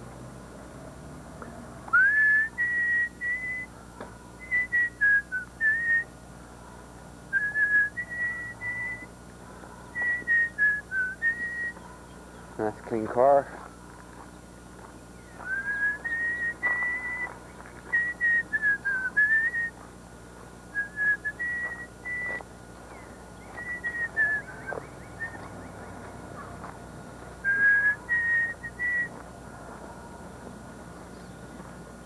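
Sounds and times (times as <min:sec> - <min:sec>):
person whistling a tune: 0:01.9 - 0:03.7, 0:04.4 - 0:06.0, 0:07.4 - 0:09.1, 0:10.0 - 0:11.8, 0:15.4 - 0:17.3, 0:17.9 - 0:19.7, 0:20.8 - 0:22.4, 0:23.6 - 0:25.4, 0:27.4 - 0:29.1.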